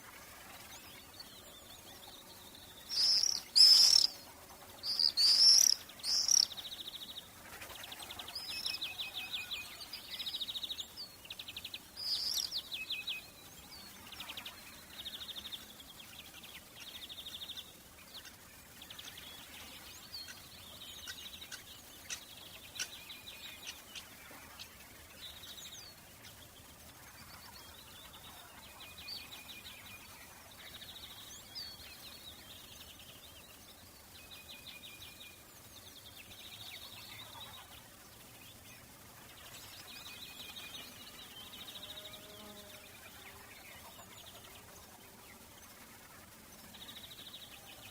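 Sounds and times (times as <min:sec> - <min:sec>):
birds trilling songs: 0:00.6 - 0:45.7
high bird chirps: 0:02.2 - 0:04.2, 0:04.8 - 0:06.7, 0:12.0 - 0:12.6.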